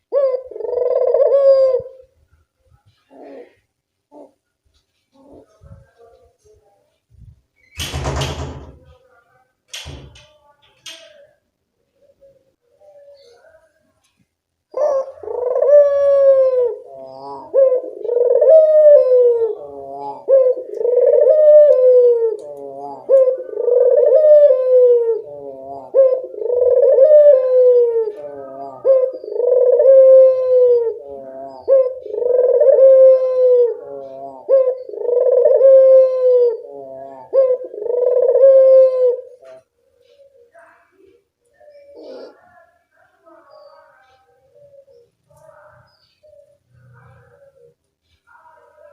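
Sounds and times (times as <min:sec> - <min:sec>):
dove cooing: 0:00.0 - 0:02.1, 0:02.9 - 0:04.4, 0:14.7 - 0:42.5, 0:43.2 - 0:48.9.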